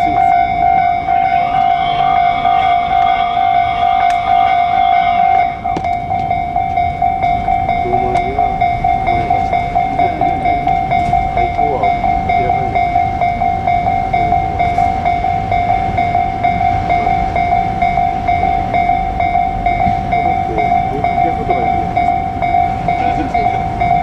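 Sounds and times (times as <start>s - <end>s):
crossing alarm bell tone: 0.0s - 24.0s
train rumbling: 0.0s - 24.0s.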